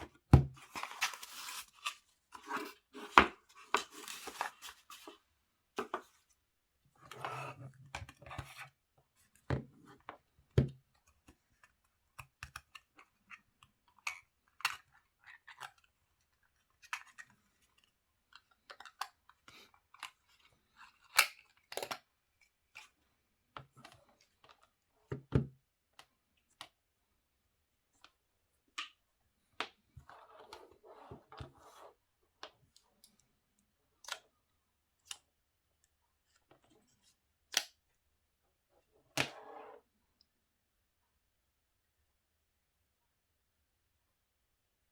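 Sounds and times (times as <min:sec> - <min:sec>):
packaging rustling: 0:00.6 - 0:05.2.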